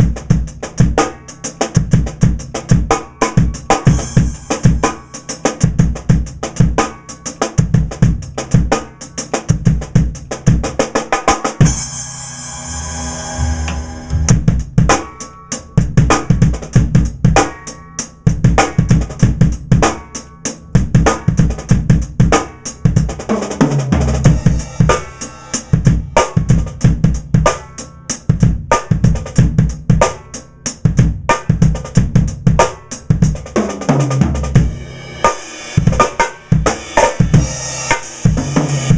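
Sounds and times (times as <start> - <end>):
snare drums with rimshots: 31.3 - 38.9.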